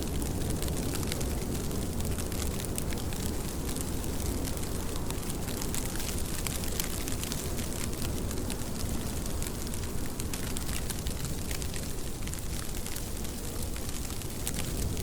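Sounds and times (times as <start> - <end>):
steady rain: 0.0 - 15.0.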